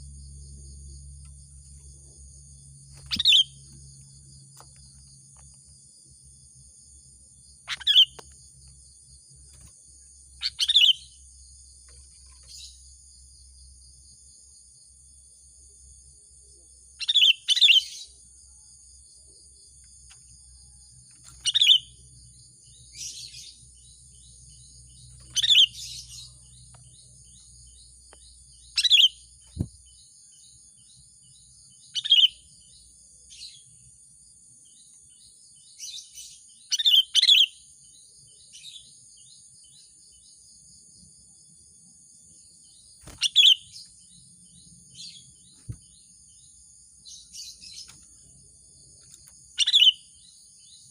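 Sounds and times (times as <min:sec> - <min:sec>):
steady high-pitched hum: 0:00.0 - 0:17.0
bird chattering calls: 0:03.0 - 0:03.6, 0:07.7 - 0:08.2, 0:10.4 - 0:11.1, 0:25.2 - 0:26.4, 0:28.8 - 0:29.7, 0:43.0 - 0:43.8, 0:49.6 - 0:50.0.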